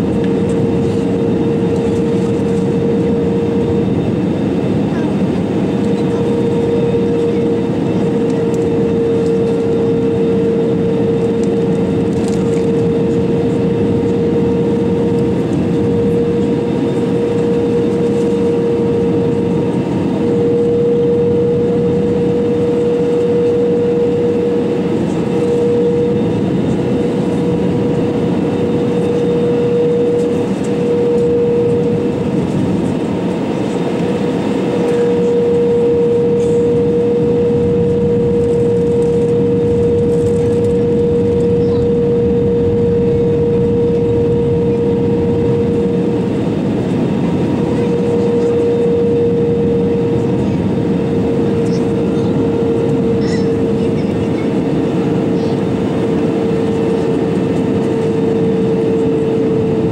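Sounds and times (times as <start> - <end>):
airliner cabin engine rumble: 0.0 - 59.9
steady hum: 0.0 - 59.9.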